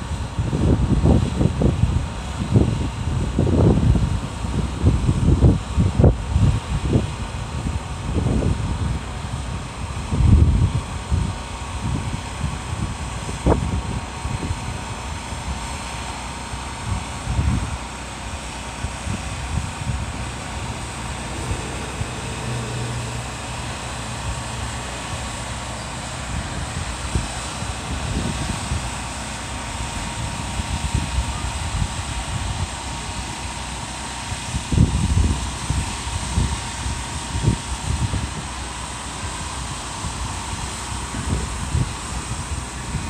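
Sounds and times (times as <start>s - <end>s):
wind on microphone: 0.0s - 43.0s
distant drone: 8.9s - 34.4s
low hum: 16.6s - 32.5s
low rumbles: 18.7s - 28.9s.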